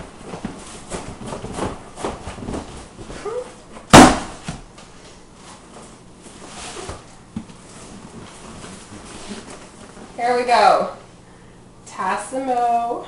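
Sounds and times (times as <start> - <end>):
loud sharp bang: 3.9 - 4.4.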